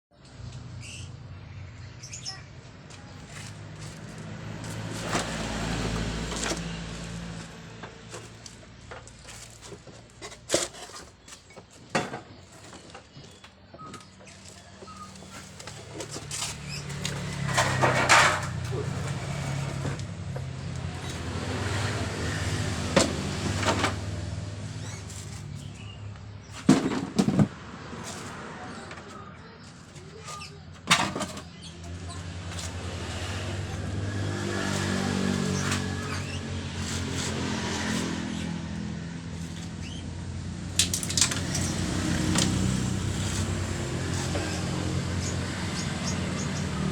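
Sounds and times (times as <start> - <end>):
scooter engine revving: 16.6 - 25.9, 31.4 - 46.9.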